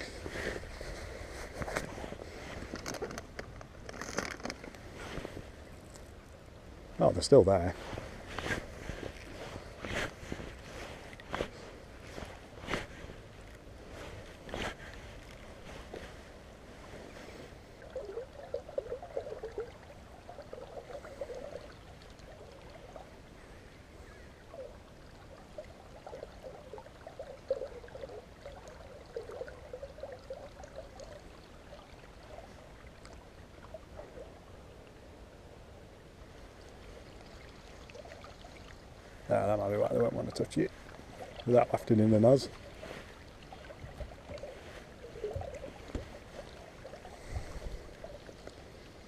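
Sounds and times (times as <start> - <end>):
river water running over shallows: 0.0 - 49.0
water gurgling: 17.5 - 35.1, 36.0 - 49.0.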